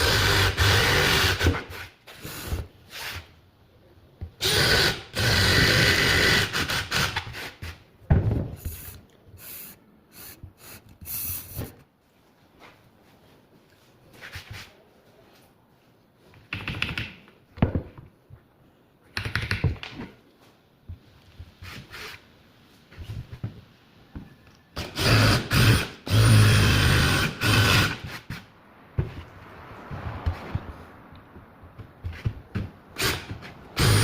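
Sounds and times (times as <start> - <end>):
knocks of wood being worked: 22.9 - 34.0.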